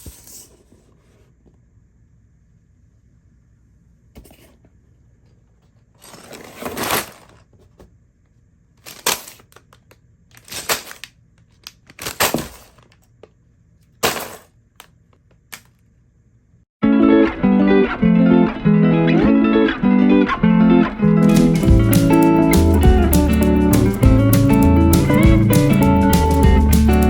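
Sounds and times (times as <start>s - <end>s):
packaging tearing: 10.4s - 12.8s.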